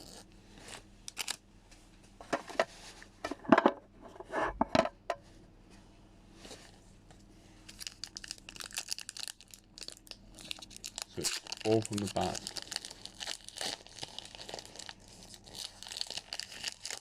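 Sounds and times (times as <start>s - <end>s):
foil wrapper crinkling: 1.1s - 1.4s, 7.7s - 17.0s.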